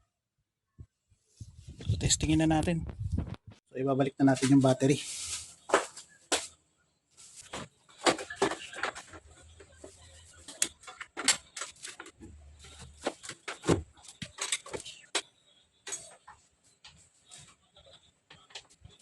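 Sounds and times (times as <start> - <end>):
tools and metal parts clicking: 14.0 - 15.0.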